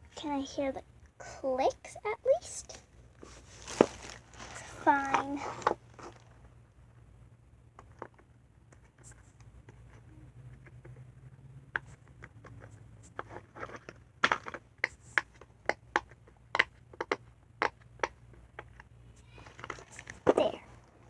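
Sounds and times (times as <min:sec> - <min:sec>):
fidget toy popping clicks: 0:14.4 - 0:18.7.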